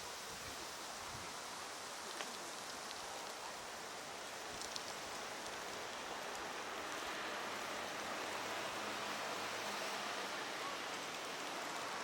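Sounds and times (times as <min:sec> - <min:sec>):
outdoor background hiss: 0:00.0 - 0:12.0
faint ticks: 0:02.0 - 0:03.5, 0:04.1 - 0:07.1.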